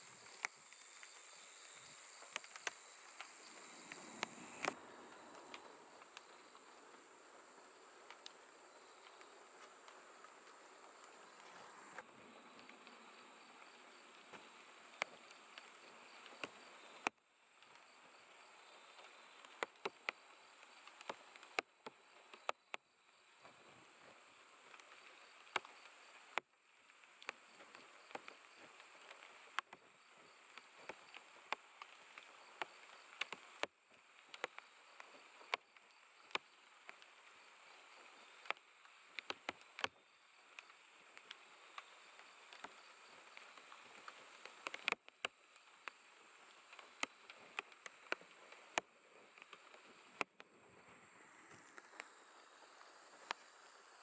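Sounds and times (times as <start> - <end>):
crickets chirring: 0.0 - 50.2, 50.8 - 54.0
sharp ticks: 38.4 - 50.5.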